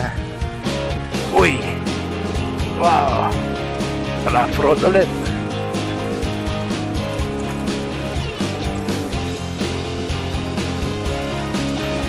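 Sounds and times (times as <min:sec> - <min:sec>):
rock music with guitar: 0:00.0 - 0:12.0.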